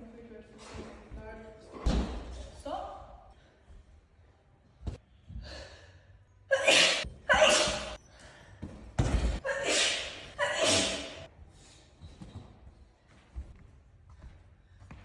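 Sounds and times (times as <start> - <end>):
faint breath: 5.2 - 6.3
woman sneezing: 6.5 - 8.0, 9.4 - 11.3.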